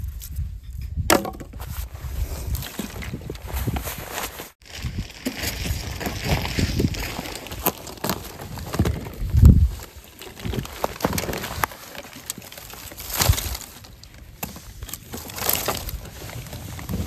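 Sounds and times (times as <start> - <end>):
crunching and cracking: 4.6 - 17.0.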